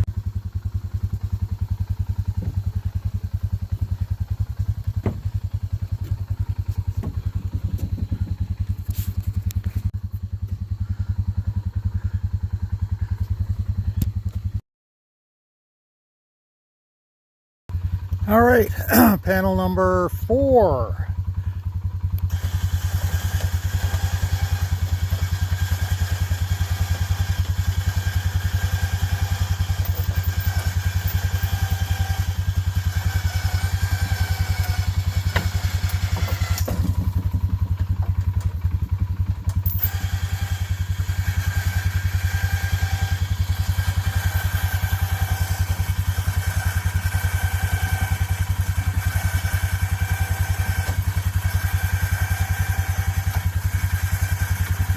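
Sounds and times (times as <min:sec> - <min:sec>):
engine running steadily: 0:00.0 - 0:14.6, 0:17.7 - 0:54.9
sharp knocks: 0:05.0 - 0:05.4.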